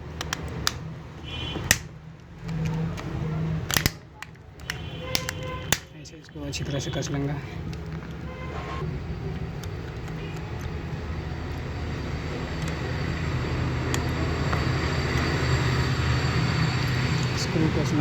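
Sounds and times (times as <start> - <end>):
low mechanical rumble: 7.4 - 18.0.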